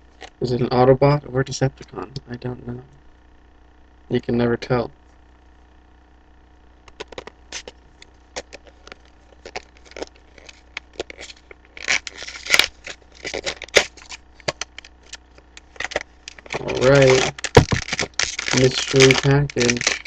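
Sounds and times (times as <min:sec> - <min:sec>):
toy package clicks and scrapes: 0:06.9 - 0:07.8, 0:08.4 - 0:20.0
package rustling: 0:06.9 - 0:20.0.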